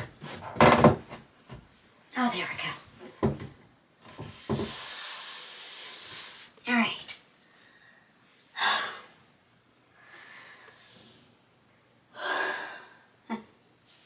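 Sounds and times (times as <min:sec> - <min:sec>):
woman breathing heavily: 0:07.4 - 0:09.3, 0:09.9 - 0:11.4, 0:12.1 - 0:13.4.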